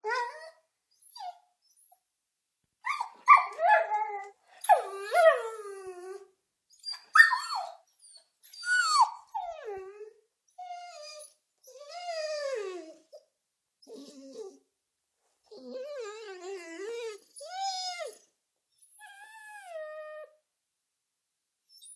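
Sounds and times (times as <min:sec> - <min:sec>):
dog whimpering: 0:00.0 - 0:02.0, 0:02.9 - 0:13.2, 0:13.8 - 0:14.6, 0:15.5 - 0:20.4.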